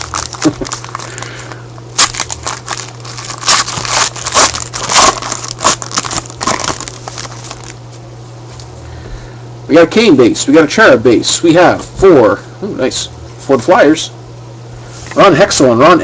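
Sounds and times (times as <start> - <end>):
wrapper crinkling and crackling: 0.0 - 7.8
steady low hum: 0.0 - 16.0.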